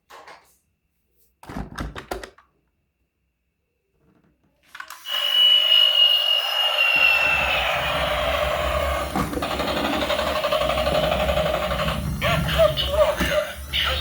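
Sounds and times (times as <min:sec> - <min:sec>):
toy electric motor whirring: 0:04.8 - 0:14.0
plastic toy clicks and rattles: 0:09.3 - 0:13.0.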